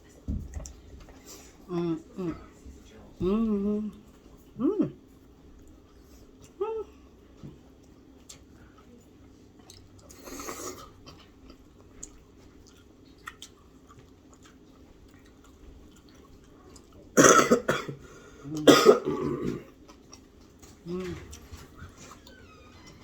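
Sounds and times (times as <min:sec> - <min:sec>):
mouth and eating clicks: 0:11.1 - 0:16.9
person coughing hard: 0:17.2 - 0:18.0, 0:18.6 - 0:19.6.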